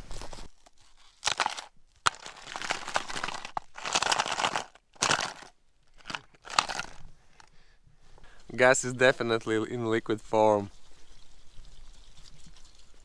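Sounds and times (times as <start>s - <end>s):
crunching and crinkling handling: 0.0s - 8.5s.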